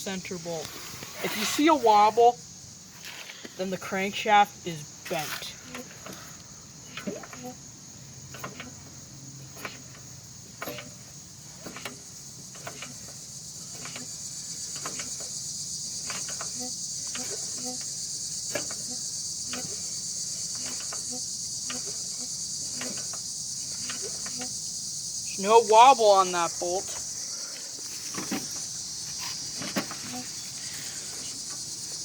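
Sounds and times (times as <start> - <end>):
insects chirring: 0.0 - 32.0.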